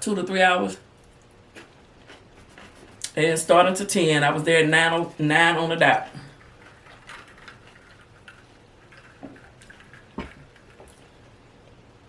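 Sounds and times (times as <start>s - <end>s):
person chewing crunchy food: 1.0s - 3.1s.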